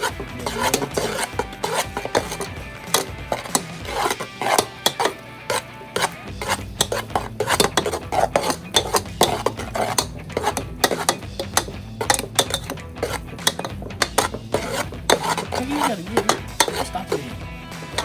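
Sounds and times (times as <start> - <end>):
spoon scraping a pot: 0.0 - 18.0.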